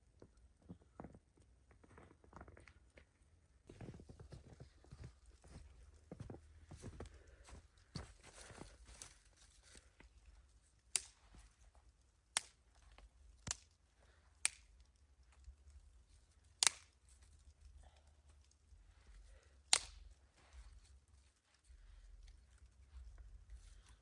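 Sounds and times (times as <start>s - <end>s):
sharp snaps: 10.9s - 11.3s, 12.3s - 12.6s, 13.4s - 13.8s, 14.4s - 15.0s, 16.6s - 17.0s, 19.7s - 20.2s.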